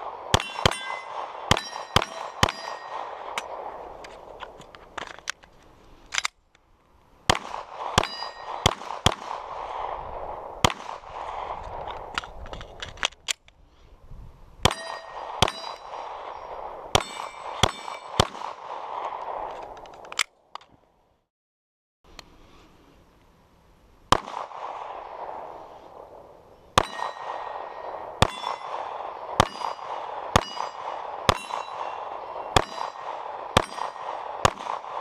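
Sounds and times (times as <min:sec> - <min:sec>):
pistol shots: 0:00.0 - 0:03.8, 0:07.3 - 0:10.0, 0:10.6 - 0:12.1, 0:14.6 - 0:19.5, 0:24.1 - 0:25.5, 0:26.8 - 0:35.0
steel targets ringing: 0:00.4 - 0:03.1, 0:08.0 - 0:08.6, 0:14.7 - 0:15.9, 0:17.0 - 0:18.2, 0:26.8 - 0:28.8, 0:29.4 - 0:33.0, 0:33.6 - 0:34.1.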